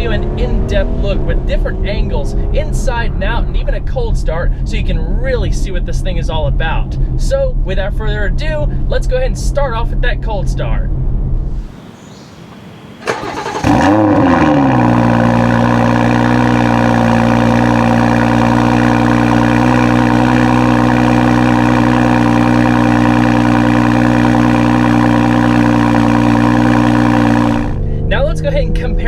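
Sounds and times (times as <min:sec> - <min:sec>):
engine cranking and revving: 0:13.0 - 0:27.9
engine fast idle: 0:13.0 - 0:27.9.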